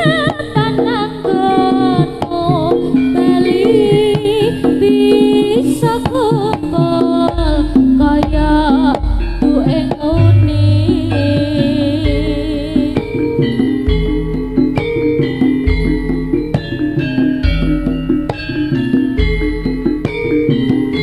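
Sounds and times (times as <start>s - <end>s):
drums and gamelan percussion: 0.0s - 21.0s
wavering vibrato melody: 10.0s - 21.0s
deep bass note: 10.1s - 13.0s.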